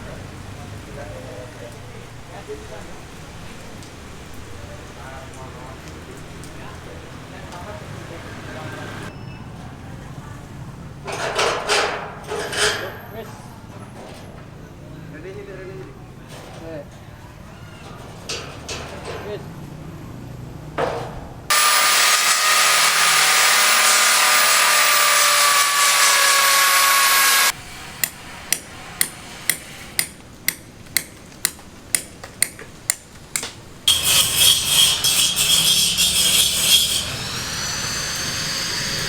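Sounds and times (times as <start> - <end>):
power tool high whine: 21.5 - 27.6, 33.9 - 39.0
power tool running loudly: 21.5 - 27.6, 36.4 - 39.0
hammer striking: 21.5 - 37.0.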